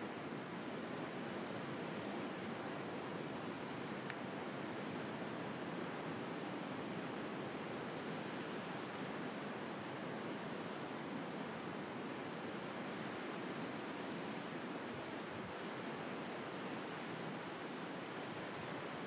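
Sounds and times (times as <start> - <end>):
wood fire crackling: 15.4 - 19.0.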